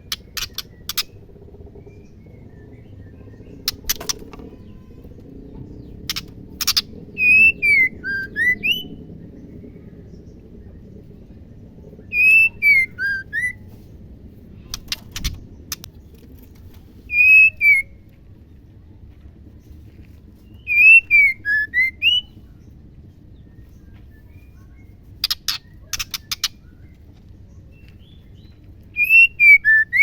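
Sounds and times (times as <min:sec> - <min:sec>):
bird whistling: 0:06.1 - 0:08.9, 0:12.1 - 0:13.6, 0:17.1 - 0:18.0, 0:20.6 - 0:22.4, 0:28.9 - 0:30.0
sharp clicks: 0:14.7 - 0:16.6.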